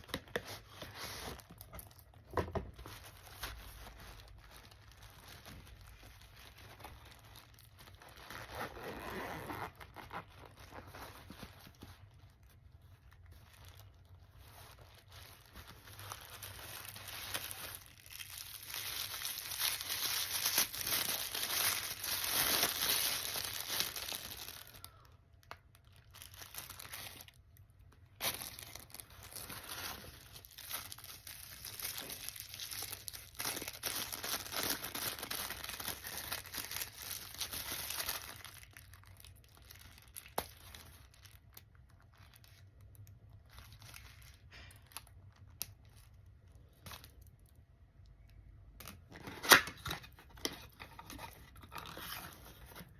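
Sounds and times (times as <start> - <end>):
packaging crinkling and tearing: 0.0 - 47.6.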